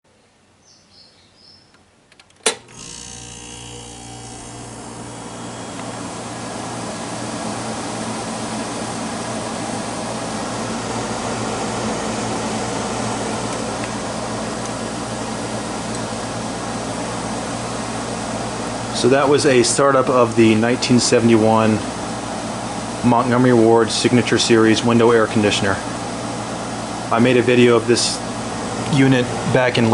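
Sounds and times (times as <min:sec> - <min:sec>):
air conditioner humming: 0:00.1 - 0:29.9
air conditioner switch click: 0:01.7 - 0:02.8, 0:14.6 - 0:14.8.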